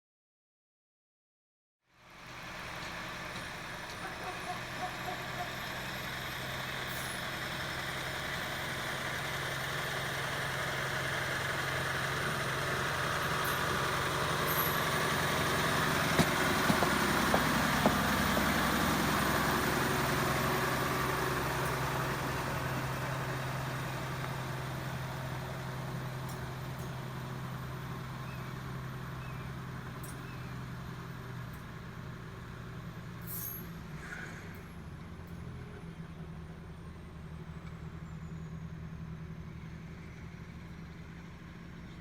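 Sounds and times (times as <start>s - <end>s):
vehicle engine running: 2.0s - 42.0s.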